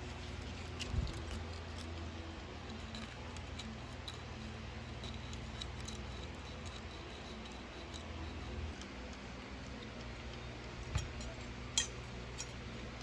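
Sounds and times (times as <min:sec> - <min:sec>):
steady low hum: 0:00.0 - 0:13.0
light metallic ticks and clicks: 0:08.7 - 0:12.7.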